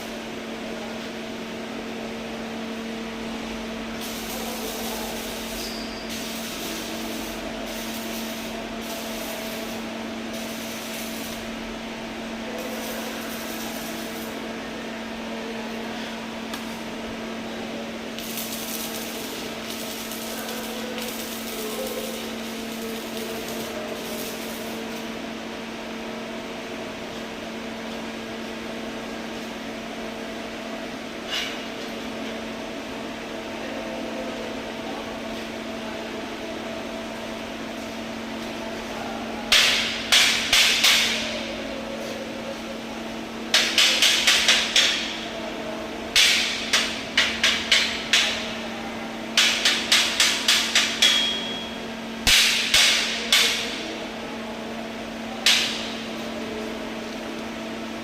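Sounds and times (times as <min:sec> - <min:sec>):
electrical hum: 0:00.0 - 0:40.4.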